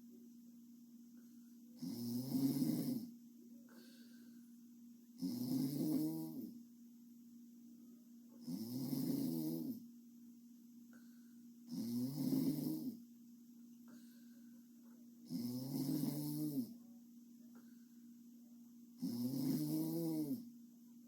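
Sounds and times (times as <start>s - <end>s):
girl snoring: 1.8s - 3.1s, 5.2s - 6.6s, 8.4s - 9.8s, 11.7s - 13.0s, 15.3s - 16.8s, 19.0s - 20.5s.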